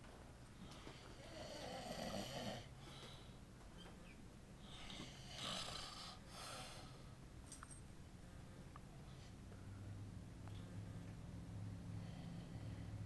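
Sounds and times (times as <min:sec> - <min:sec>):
man snoring: 0:01.2 - 0:02.7, 0:04.9 - 0:06.2.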